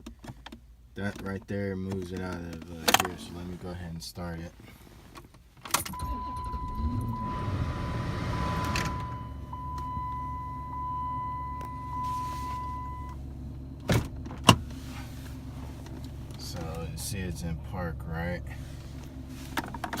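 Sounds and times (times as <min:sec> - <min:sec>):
car engine starting and idling: 0:04.5 - 0:20.0
steady high tone: 0:06.0 - 0:13.2.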